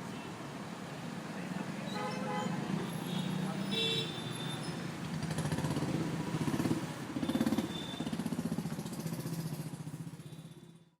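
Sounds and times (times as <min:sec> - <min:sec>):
street traffic: 0:00.0 - 0:11.0
motorcycles passing by: 0:02.5 - 0:10.8.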